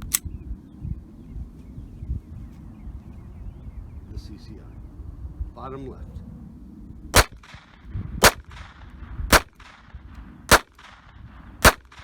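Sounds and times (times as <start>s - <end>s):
pistol shots with echo: 7.1s - 12.0s.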